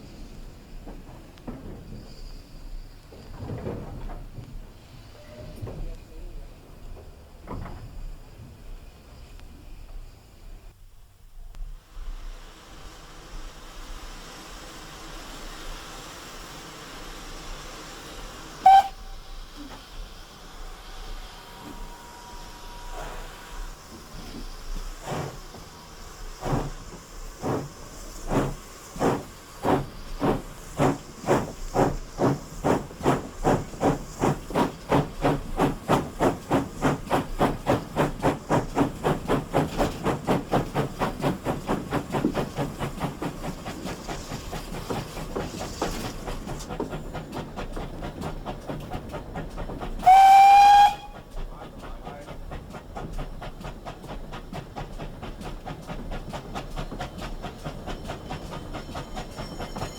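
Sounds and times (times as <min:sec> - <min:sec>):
steam locomotive exhaust beats: 0:00.0 - 0:59.9
steam whistle blast: 0:18.6 - 0:19.7, 0:20.4 - 0:23.7, 0:50.0 - 0:51.2.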